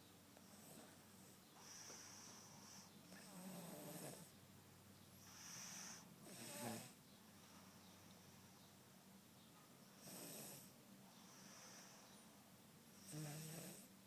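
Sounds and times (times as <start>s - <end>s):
girl snoring softly: 0.4s - 4.4s, 5.2s - 7.0s, 10.0s - 12.2s, 12.9s - 14.0s.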